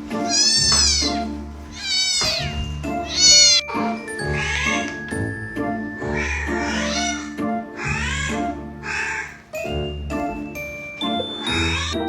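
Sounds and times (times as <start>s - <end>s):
background music: 0.0s - 12.0s
cat meowing: 0.2s - 3.7s, 4.3s - 4.9s, 6.2s - 9.4s, 11.5s - 12.0s.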